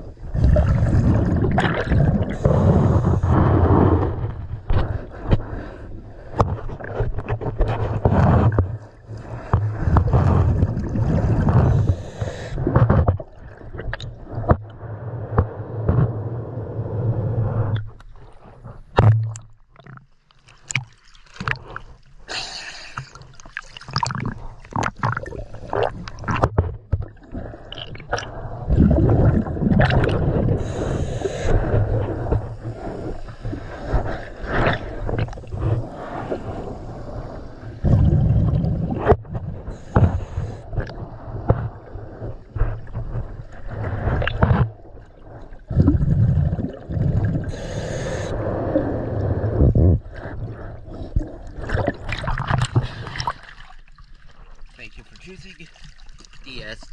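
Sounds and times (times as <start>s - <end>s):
bubbles gurgling underwater: 0.0s - 4.4s, 8.0s - 14.8s, 23.0s - 37.2s, 37.8s - 54.7s
diver breathing through regulator: 2.2s - 7.0s, 9.1s - 13.0s, 21.6s - 23.3s, 30.0s - 38.8s, 39.6s - 51.8s.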